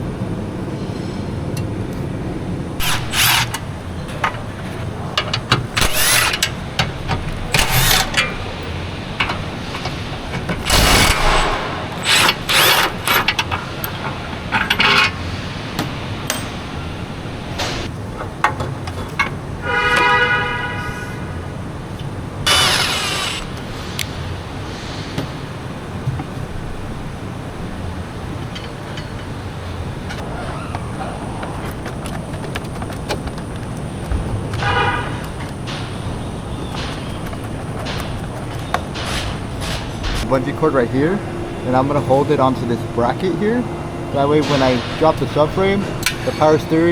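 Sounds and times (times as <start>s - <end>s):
steady background hum: 0.0s - 46.9s
tool bursts and clanks: 2.8s - 16.6s, 22.5s - 24.0s.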